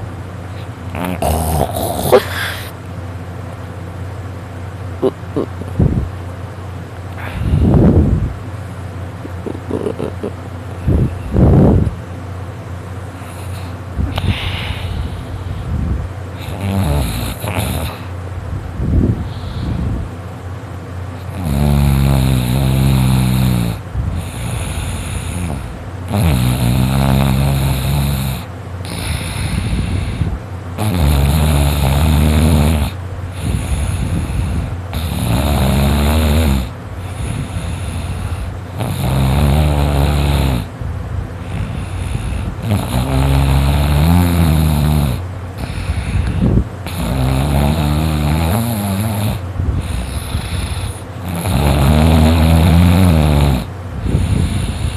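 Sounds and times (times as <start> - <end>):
person snoring loudly: 0.6 - 2.8, 5.0 - 6.0, 9.2 - 11.8, 13.2 - 15.4, 16.4 - 18.1, 21.2 - 40.7, 41.4 - 54.9
quiet breathing: 7.1 - 7.8, 13.1 - 15.8, 19.2 - 20.1, 28.4 - 30.4, 37.0 - 38.8, 45.5 - 46.9.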